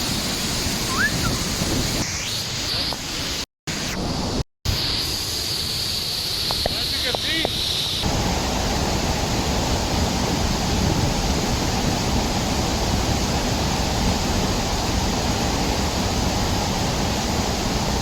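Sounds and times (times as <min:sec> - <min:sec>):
waterfall rushing: 0:00.0 - 0:02.0.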